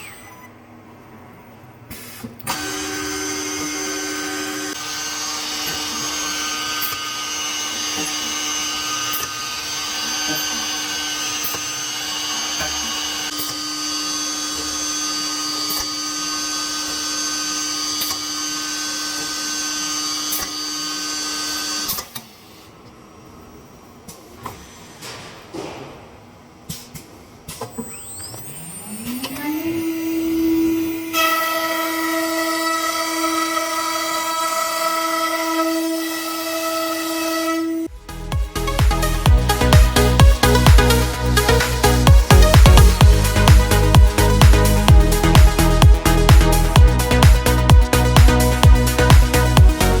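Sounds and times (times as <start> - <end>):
router spindle steady tone: 27.8 - 37.0.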